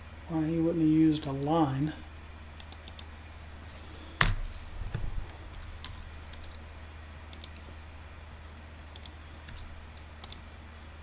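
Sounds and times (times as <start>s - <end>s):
steady low hum: 0.0s - 11.0s
computer keyboard keystrokes: 2.6s - 3.1s, 7.3s - 7.7s, 9.0s - 10.5s
mouse clicks: 2.6s - 3.1s, 7.3s - 7.7s, 8.9s - 10.4s.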